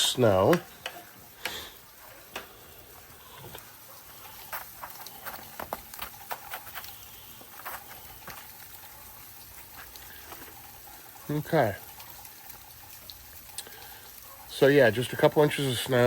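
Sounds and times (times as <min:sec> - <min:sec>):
faint hiss: 0:00.0 - 0:12.2, 0:13.0 - 0:16.0
icy snow crunching and ticking: 0:03.5 - 0:10.9.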